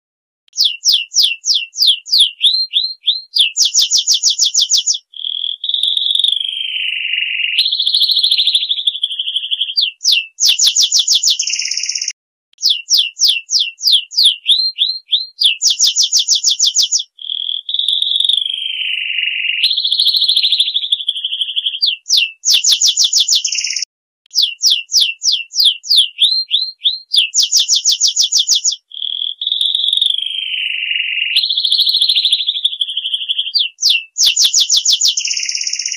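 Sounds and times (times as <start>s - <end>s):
bird-song ringtone: 0.6s - 35.9s.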